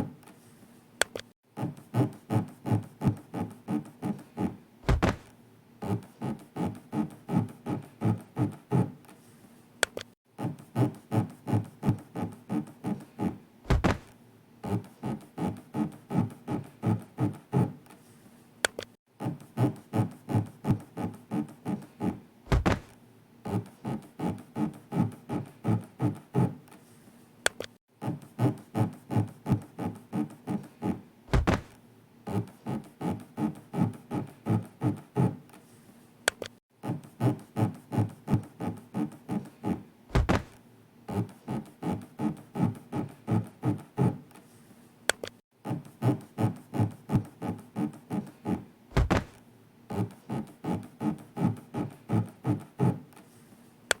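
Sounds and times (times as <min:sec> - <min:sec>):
deep thump: 0:04.9 - 0:05.3, 0:13.7 - 0:14.1, 0:22.5 - 0:23.0, 0:31.3 - 0:31.8, 0:40.1 - 0:40.6, 0:49.0 - 0:49.4.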